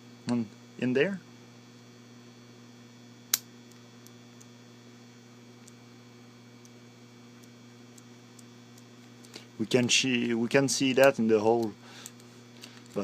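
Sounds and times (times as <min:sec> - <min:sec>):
electrical mains hum: 0:00.0 - 0:13.0
sharp click: 0:03.3 - 0:04.2.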